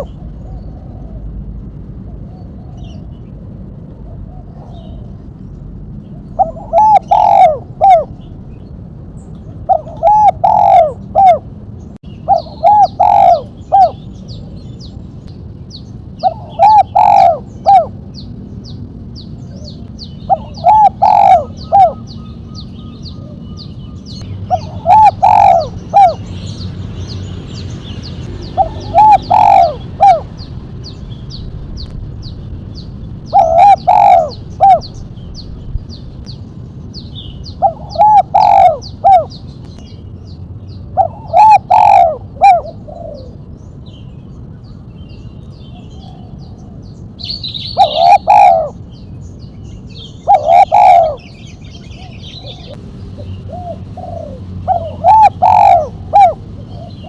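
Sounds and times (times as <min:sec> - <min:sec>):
dove cooing: 0:00.0 - 0:01.4, 0:02.1 - 0:05.2, 0:06.2 - 0:08.3, 0:09.5 - 0:11.5, 0:12.2 - 0:14.6, 0:16.2 - 0:18.0, 0:19.5 - 0:26.3, 0:28.3 - 0:30.5, 0:33.3 - 0:35.0, 0:37.5 - 0:39.4, 0:41.0 - 0:43.5, 0:47.6 - 0:48.8, 0:50.0 - 0:57.0.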